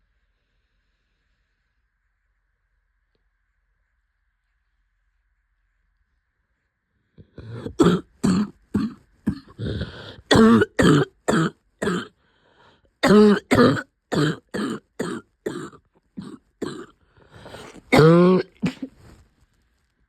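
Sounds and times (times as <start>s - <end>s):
person coughing: 7.4s - 12.1s, 13.0s - 19.0s.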